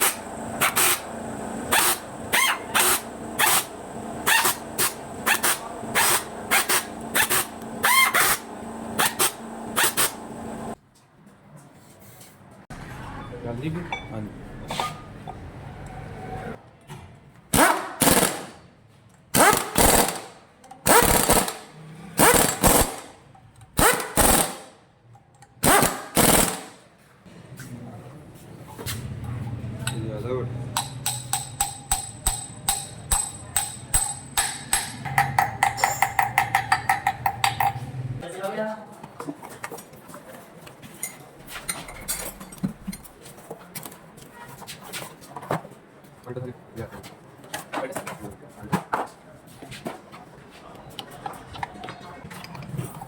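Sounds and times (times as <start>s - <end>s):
impact wrench rattling: 1.7s - 10.2s, 30.7s - 37.8s
metallic clinks of hand tools: 30.8s - 36.9s.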